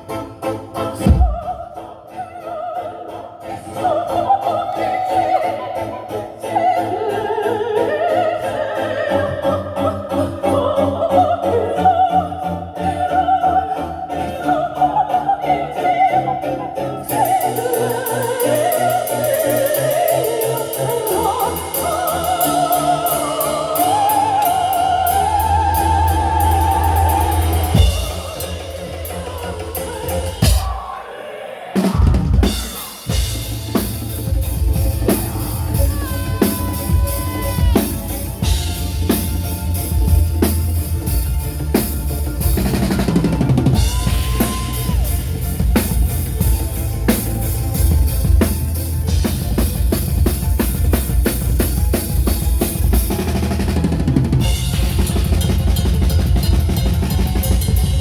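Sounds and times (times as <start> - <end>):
operatic voice singing with vibrato: 0.0 - 40.2, 42.6 - 46.6
live metal band music: 17.1 - 31.0, 31.8 - 58.0
fast drumming: 17.2 - 31.0, 31.8 - 58.0.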